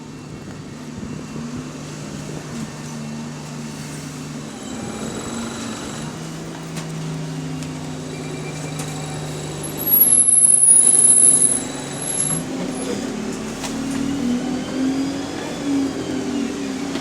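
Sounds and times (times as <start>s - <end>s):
bus engine running: 0.0s - 17.0s
bus pulling away: 0.0s - 17.0s
high-pitched door hinge squeal: 8.1s - 12.9s.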